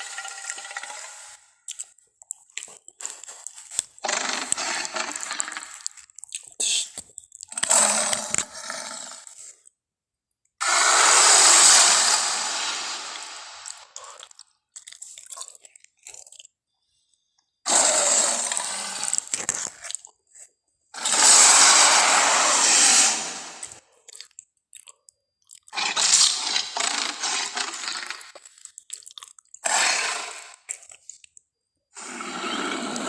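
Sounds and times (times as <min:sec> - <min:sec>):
dinosaur roars: 0:10.6 - 0:13.8, 0:21.0 - 0:23.6, 0:29.6 - 0:30.6.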